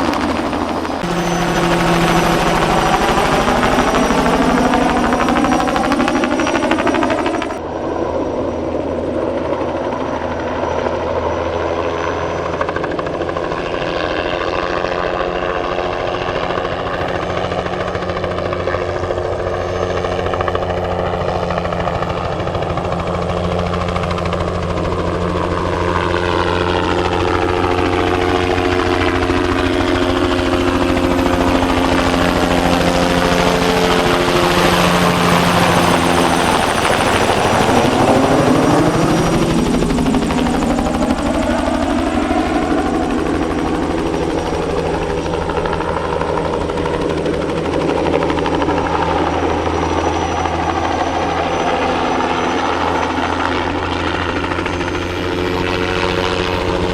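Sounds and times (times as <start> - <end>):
helicopter running: 0.0 - 56.9.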